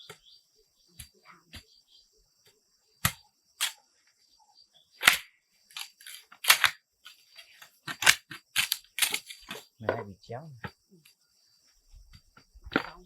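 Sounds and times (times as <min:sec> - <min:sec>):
sharp striking cracks: 0:05.0 - 0:06.8.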